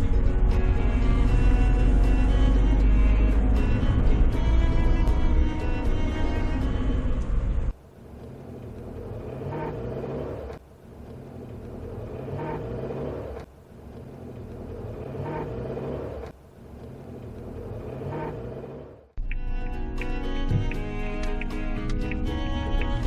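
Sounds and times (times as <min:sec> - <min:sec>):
background music: 0:00.0 - 0:07.7, 0:19.2 - 0:23.0
car engine pulling away: 0:00.0 - 0:19.2.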